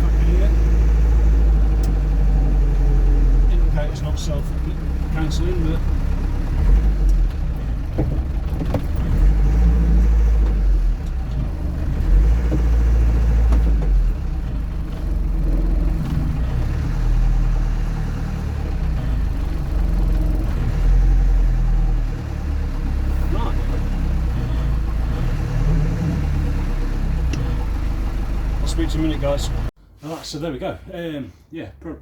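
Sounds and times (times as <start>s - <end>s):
engine low rumble: 0.0s - 32.0s.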